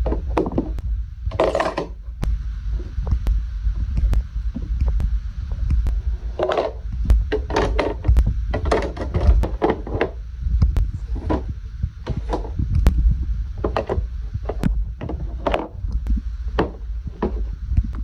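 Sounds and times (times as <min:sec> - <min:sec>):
low rumble: 0:00.0 - 0:18.0.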